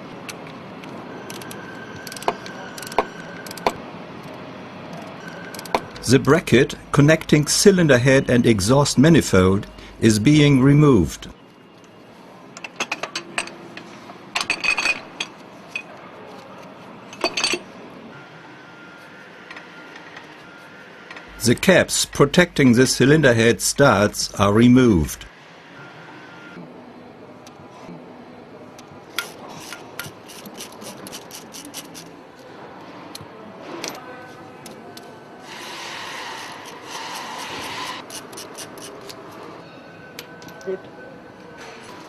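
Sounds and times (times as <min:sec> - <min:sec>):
tools clinking against metal: 0:12.6 - 0:16.0, 0:17.1 - 0:17.7.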